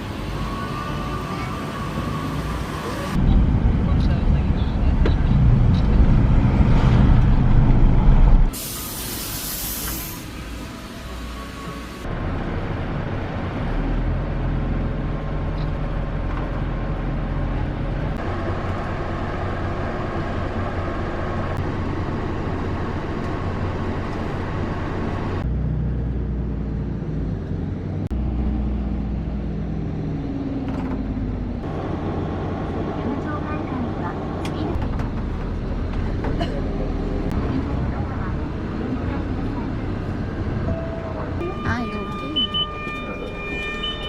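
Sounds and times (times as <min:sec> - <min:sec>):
bus engine running: 0:00.0 - 0:44.0
road noise: 0:00.0 - 0:44.0.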